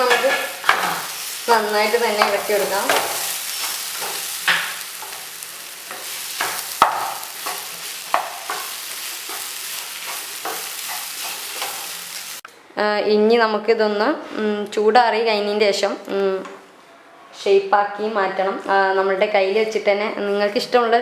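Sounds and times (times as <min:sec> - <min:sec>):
food sizzling in a frying pan: 0:00.0 - 0:12.4
spatula stirring and scraping: 0:00.0 - 0:12.4
spatula knocking against pan: 0:06.4 - 0:08.7.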